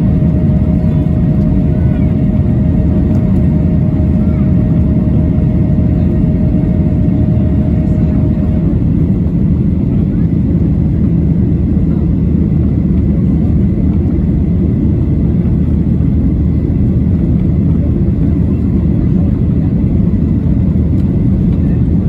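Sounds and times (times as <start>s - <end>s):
airflow: 0.0s - 10.3s
jet engine cabin rumble: 0.0s - 22.0s.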